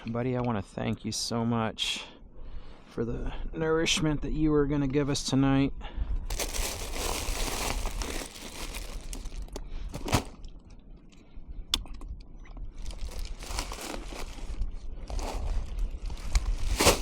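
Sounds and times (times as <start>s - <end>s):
low rumble: 5.8s - 17.0s
rustling and crinkling handling: 6.3s - 10.6s, 12.8s - 17.0s.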